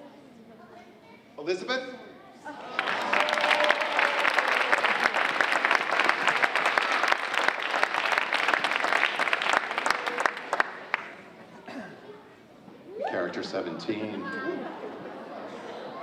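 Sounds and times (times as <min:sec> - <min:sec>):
audience applauding: 0:02.6 - 0:11.4.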